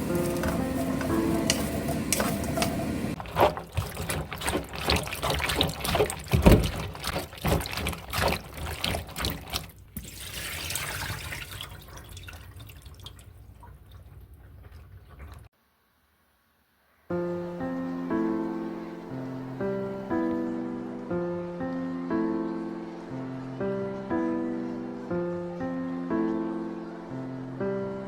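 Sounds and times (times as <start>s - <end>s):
background music: 0.0s - 3.2s, 17.1s - 28.0s
liquid pouring and trickling: 0.0s - 15.5s
liquid splashing: 0.0s - 15.5s.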